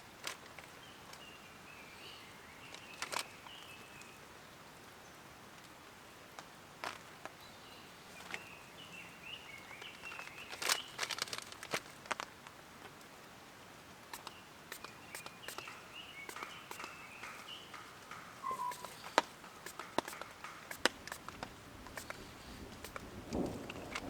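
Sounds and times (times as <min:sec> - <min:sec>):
sharp clicks and light knocks: 0:14.1 - 0:24.0
faint bird chirps: 0:14.2 - 0:21.2.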